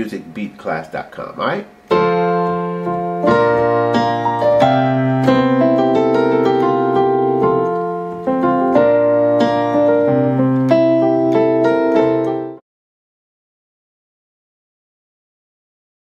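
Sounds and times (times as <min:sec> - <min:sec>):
piano playing chords: 0:01.7 - 0:12.6.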